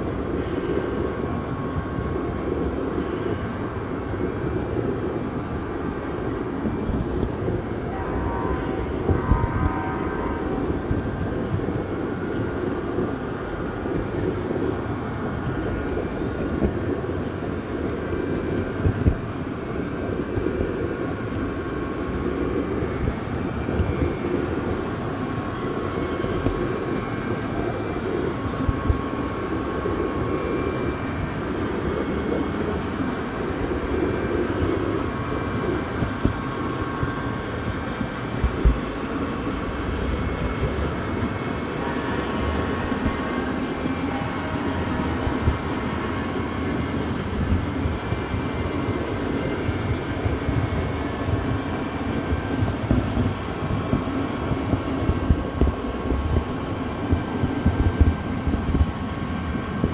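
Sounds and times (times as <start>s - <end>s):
moving train rumble: 0.0s - 59.9s
faint squeal: 5.8s - 13.8s.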